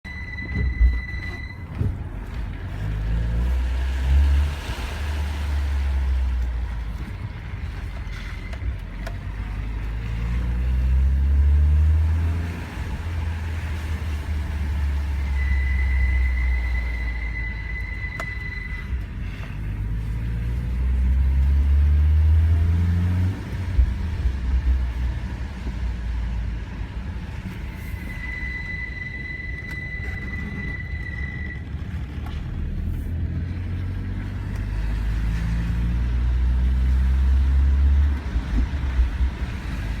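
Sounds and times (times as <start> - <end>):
engine revving: 2.6 - 6.5, 9.1 - 17.4, 19.6 - 27.0, 32.4 - 40.0
high-pitched screech: 15.1 - 19.5, 27.7 - 31.7.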